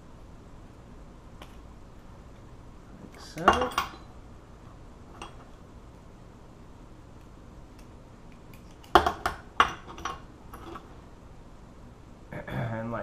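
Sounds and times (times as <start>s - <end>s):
small metal parts clinking: 3.2s - 4.1s.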